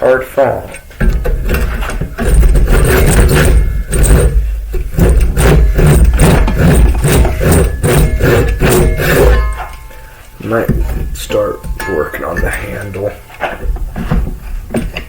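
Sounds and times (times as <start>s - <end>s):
hand-sanding wood scraping strokes: 4.9s - 9.3s.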